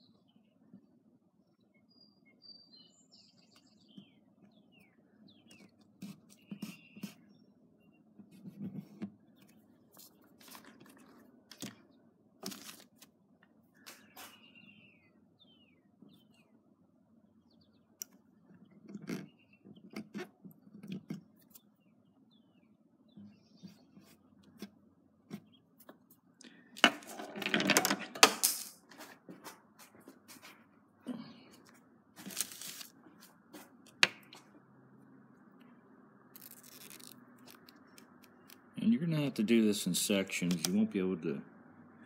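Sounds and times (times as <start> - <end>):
tape ripping from roll: 12.4 - 13.1, 32.2 - 32.9, 36.4 - 37.8.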